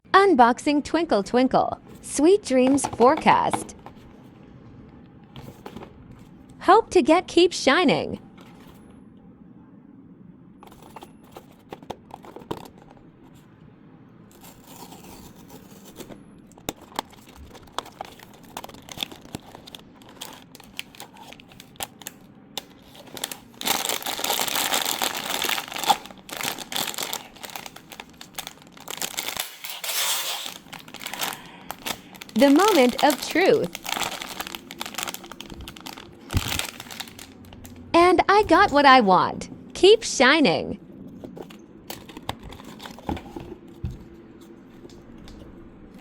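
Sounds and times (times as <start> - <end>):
packaging clicks and rustles: 2.6 - 4.2, 5.4 - 6.4, 10.6 - 13.4, 14.3 - 37.8, 41.1 - 46.0
packaging crinkling and tearing: 10.6 - 13.1, 14.3 - 37.8, 41.3 - 43.5.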